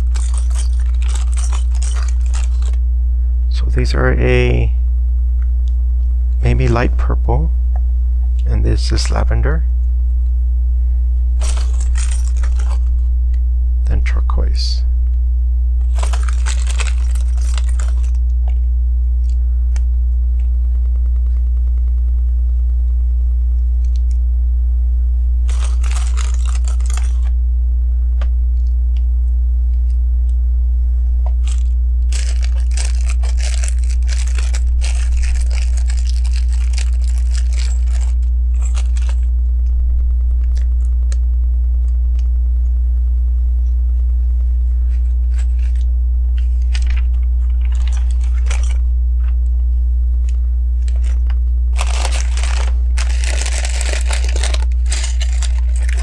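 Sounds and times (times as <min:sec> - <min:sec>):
plastic pieces clicking: 0:00.0 - 0:02.8, 0:15.9 - 0:18.2, 0:25.5 - 0:27.3, 0:31.4 - 0:39.3, 0:51.8 - 0:56.0
plastic pieces rustling and rattling: 0:00.0 - 0:02.8, 0:11.4 - 0:12.9, 0:15.8 - 0:18.2, 0:25.5 - 0:27.3, 0:31.4 - 0:39.3, 0:44.9 - 0:48.8, 0:50.8 - 0:56.0
low electrical hum: 0:00.0 - 0:56.0.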